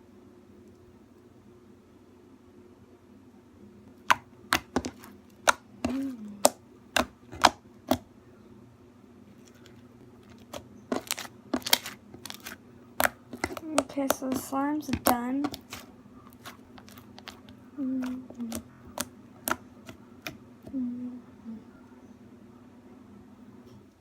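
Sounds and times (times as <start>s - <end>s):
slime clicks and taps: 4.1s - 5.6s, 10.9s - 15.8s.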